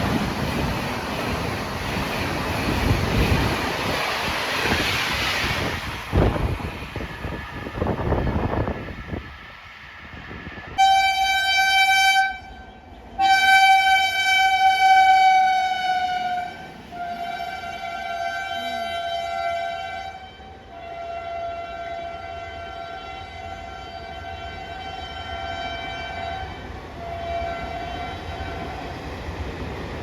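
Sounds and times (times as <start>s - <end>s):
train rumbling past: 0.0s - 30.0s
locomotive horn blasts: 10.8s - 28.7s.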